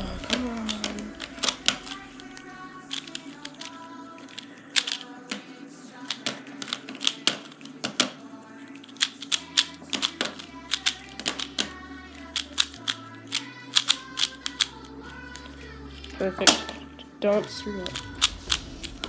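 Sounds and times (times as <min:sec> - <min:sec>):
background music with bass: 0:00.0 - 0:02.3
speed cube clicking: 0:00.0 - 0:16.7, 0:17.8 - 0:19.0.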